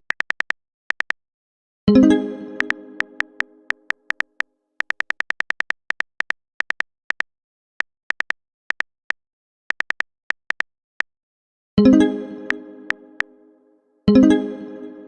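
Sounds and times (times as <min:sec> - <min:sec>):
phone keyboard typing clicks: 0:00.0 - 0:01.2, 0:02.6 - 0:07.3, 0:08.1 - 0:08.9, 0:09.7 - 0:10.7.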